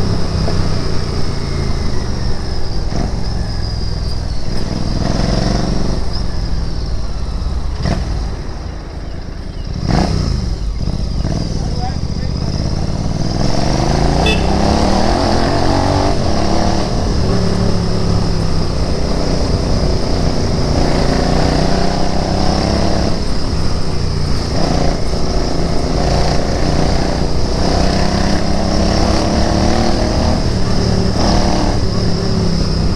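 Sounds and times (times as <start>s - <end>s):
motorcycle engine accelerating: 0.0s - 32.9s.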